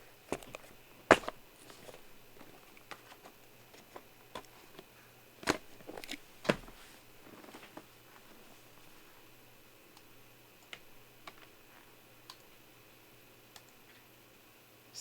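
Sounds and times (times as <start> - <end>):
cards handled on tabletop: 0.3 - 9.1.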